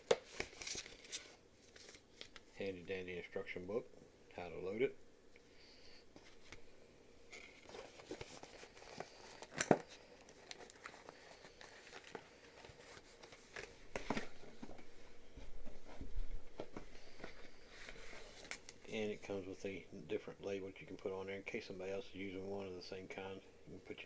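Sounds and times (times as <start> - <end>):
paper rustling and crinkling: 0.0 - 2.7, 7.3 - 18.8.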